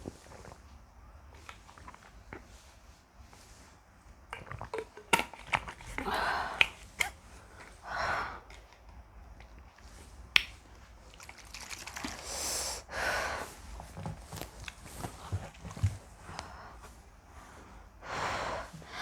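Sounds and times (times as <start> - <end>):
person breathing heavily: 6.0 - 6.6, 12.2 - 13.7, 16.2 - 19.0.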